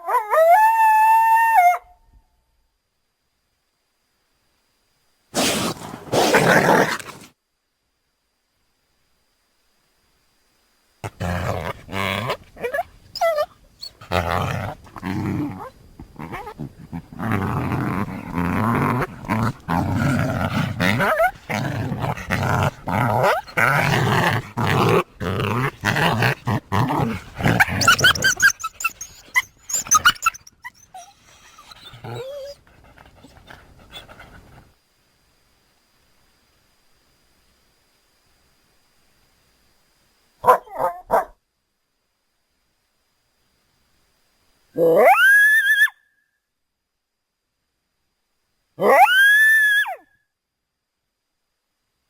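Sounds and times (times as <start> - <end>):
coyote growls and snarls: 5.4 - 7.3, 11.0 - 34.8
coyote high cries: 27.0 - 32.6, 44.8 - 46.1, 48.8 - 50.1.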